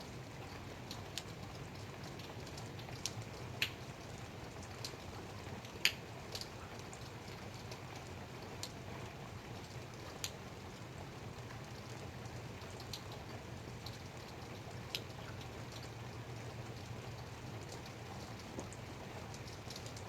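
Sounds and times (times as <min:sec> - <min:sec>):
light rain hiss: 0:00.0 - 0:20.0
drops ticking on a surface: 0:00.9 - 0:03.8, 0:05.6 - 0:07.0, 0:17.6 - 0:20.0.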